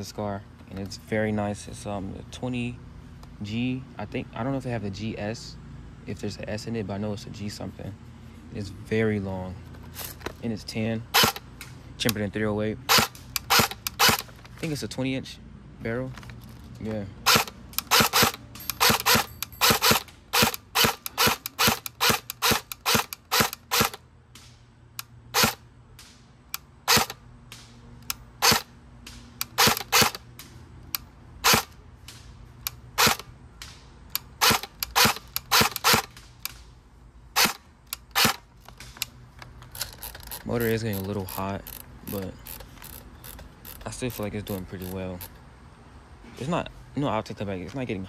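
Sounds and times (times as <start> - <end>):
airsoft rifle firing single shots: 17.2 - 24.6, 26.8 - 27.7, 28.4 - 30.5, 31.4 - 32.3, 34.4 - 36.4.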